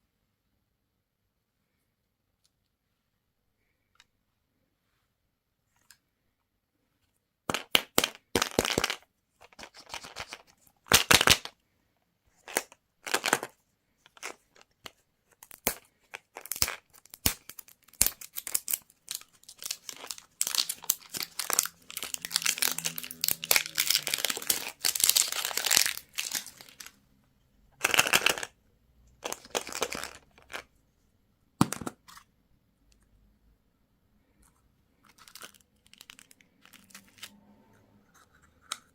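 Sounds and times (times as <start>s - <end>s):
candy wrappers crinkling: 15.4s - 27.0s, 27.8s - 28.5s, 29.2s - 30.7s, 35.0s - 37.3s.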